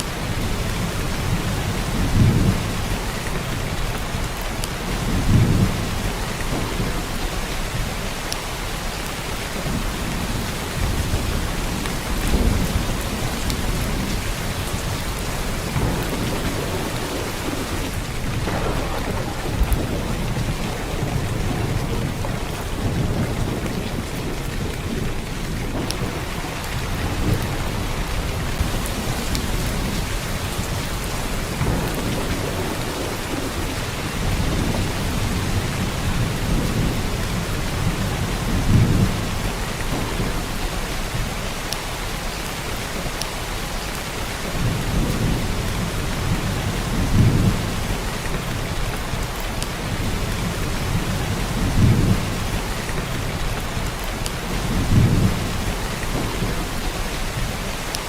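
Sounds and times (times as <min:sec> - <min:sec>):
heavy rain: 0:00.0 - 0:58.0.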